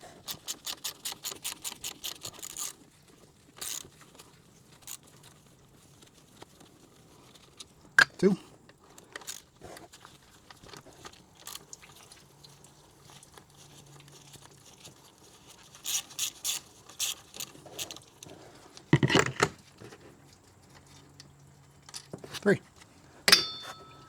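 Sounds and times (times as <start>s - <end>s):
metal clunk and rattle: 19.0s - 19.6s.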